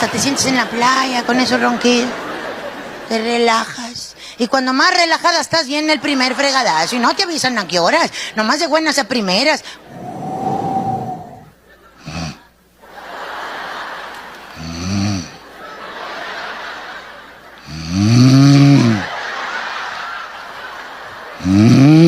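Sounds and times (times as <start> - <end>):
soft breathy hissing: 9.6 - 11.5
person imitating loud snoring: 14.6 - 15.4, 17.6 - 19.1, 21.4 - 22.0.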